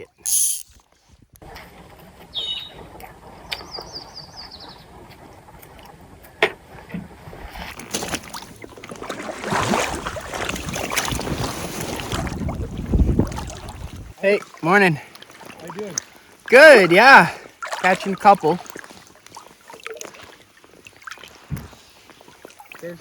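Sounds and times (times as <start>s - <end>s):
high chirping trill: 0.3s - 0.7s
water splashing around boat: 1.6s - 23.0s.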